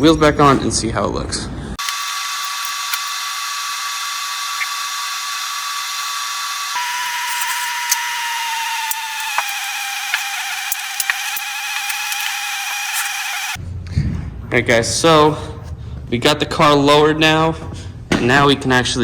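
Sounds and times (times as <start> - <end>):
small motor whining: 1.8 - 13.6.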